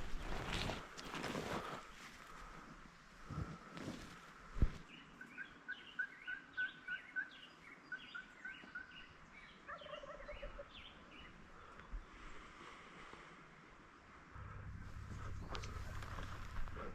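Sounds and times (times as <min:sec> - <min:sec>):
songbirds chirping: 0:00.2 - 0:12.8, 0:13.8 - 0:16.9
turkey yelping: 0:09.7 - 0:10.8
low rattling call: 0:14.4 - 0:16.9.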